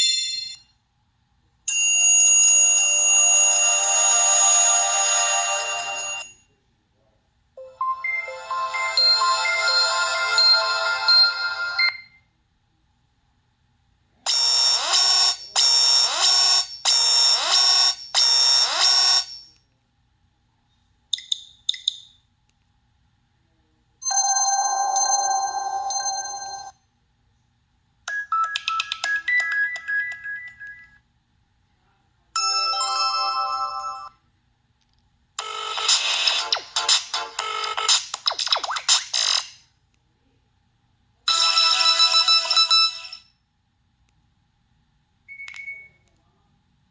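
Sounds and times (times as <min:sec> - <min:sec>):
phone ringtone melodies: 0:04.1 - 0:06.3, 0:07.6 - 0:12.1, 0:28.3 - 0:31.0.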